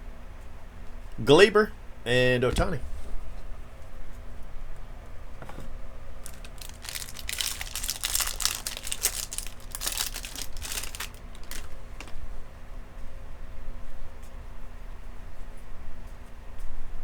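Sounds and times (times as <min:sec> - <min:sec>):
foil wrapper crinkling and tearing: 0:06.2 - 0:12.2.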